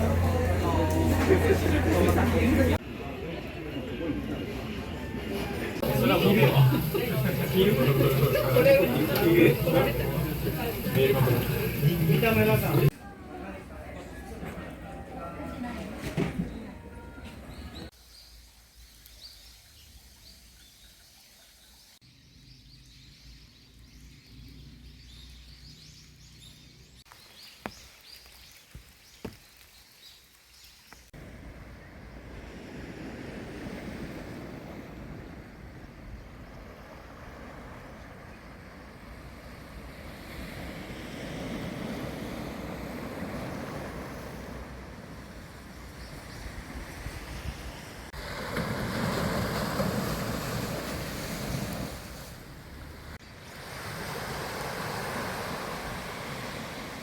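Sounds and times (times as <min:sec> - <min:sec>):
sea surf: 0:00.0 - 0:17.6, 0:31.2 - 0:57.0
wind noise: 0:31.2 - 0:52.4.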